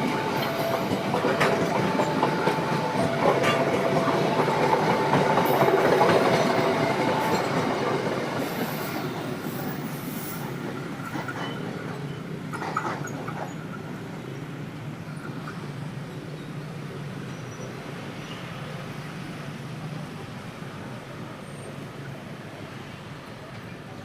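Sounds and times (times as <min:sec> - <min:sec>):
two-tone crossing alarm: 0:00.0 - 0:07.9
train wheels rattling on rail joints: 0:00.0 - 0:15.8.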